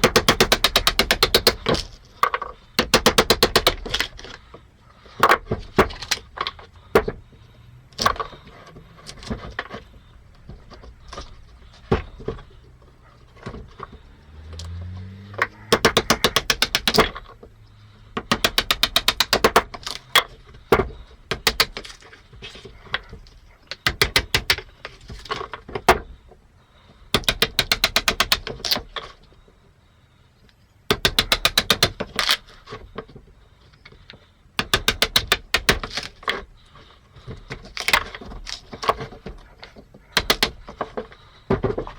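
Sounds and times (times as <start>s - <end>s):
sharp clicks of tool and wood: 0.0s - 7.2s, 13.4s - 17.4s, 18.2s - 26.1s, 27.1s - 29.2s, 30.9s - 32.9s, 34.2s - 41.9s
turning tool knocking on wood: 15.4s - 17.2s.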